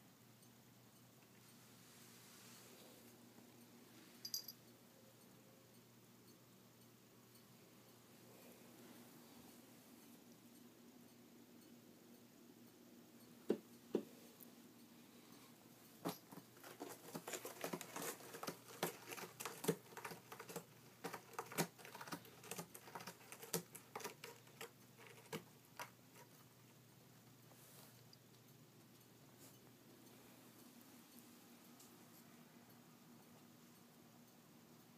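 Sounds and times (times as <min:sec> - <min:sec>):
cat scratching pad: 0:16.0 - 0:26.5.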